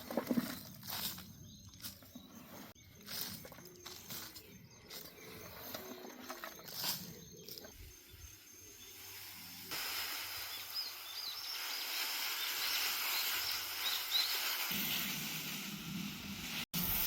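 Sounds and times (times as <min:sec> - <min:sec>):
outdoor ambience hiss: 0:00.0 - 0:17.0
high bird chirps: 0:10.5 - 0:14.6.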